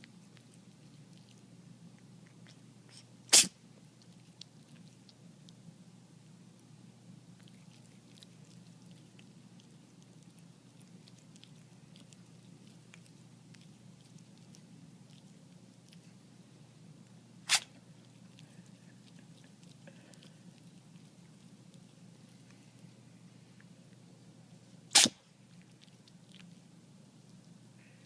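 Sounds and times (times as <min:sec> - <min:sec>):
cat sneezing: 0:02.9 - 0:03.6, 0:17.4 - 0:17.8, 0:24.9 - 0:25.2.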